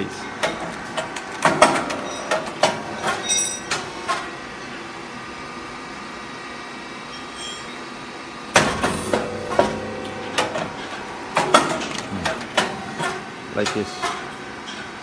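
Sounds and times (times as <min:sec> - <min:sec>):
machine hum: 0:07.8 - 0:15.0.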